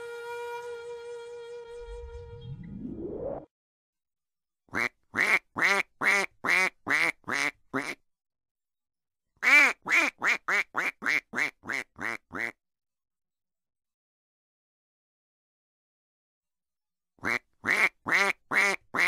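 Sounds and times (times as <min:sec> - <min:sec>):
duck quacking: 0:04.7 - 0:08.0, 0:09.4 - 0:12.6, 0:17.2 - 0:19.0.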